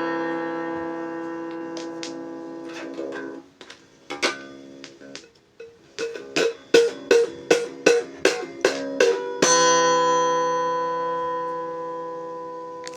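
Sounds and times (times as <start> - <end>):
plucked string instrument: 0.0 - 11.9.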